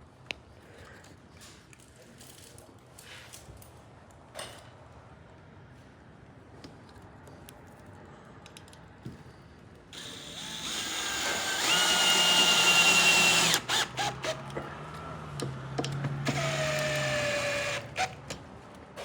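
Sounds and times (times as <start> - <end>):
power drill whining: 10.0 - 14.5, 16.2 - 18.2.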